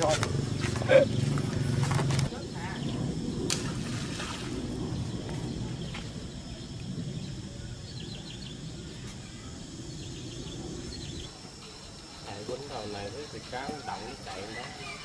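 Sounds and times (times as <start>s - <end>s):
steady low rumble: 0.0s - 11.6s.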